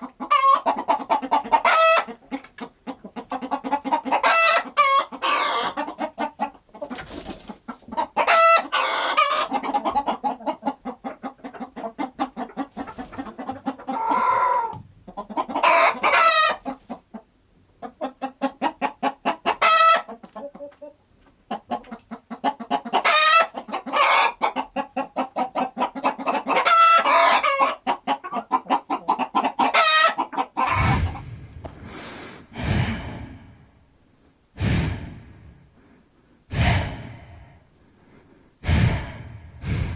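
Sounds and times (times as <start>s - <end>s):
chickens clucking: 0.0s - 31.8s
rooster crowing: 14.0s - 14.7s
animal breathy blows: 30.8s - 33.5s, 34.6s - 35.5s, 36.5s - 37.6s, 38.6s - 39.9s.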